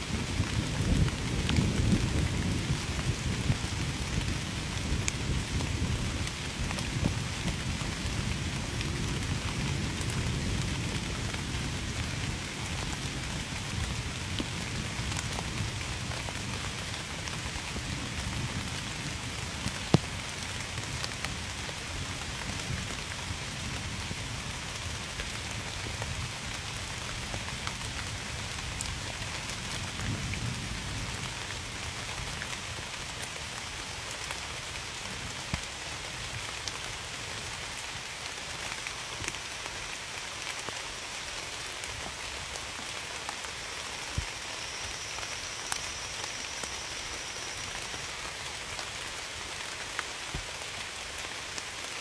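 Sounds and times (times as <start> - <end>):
heavy rain falling: 0.0 - 52.0
low rumble of thunder: 0.1 - 17.2.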